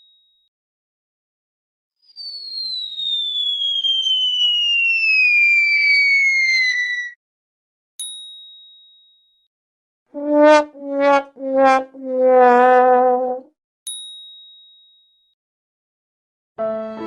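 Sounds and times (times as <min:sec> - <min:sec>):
cartoon falling whistle: 0:02.1 - 0:07.2.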